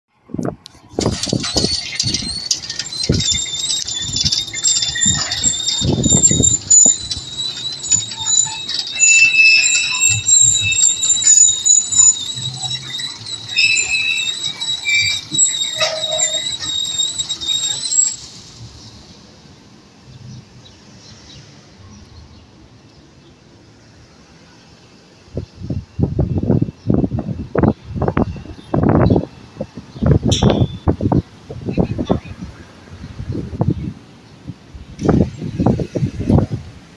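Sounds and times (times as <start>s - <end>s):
electric gate squealing: 1.0s - 19.0s, 30.3s - 31.2s.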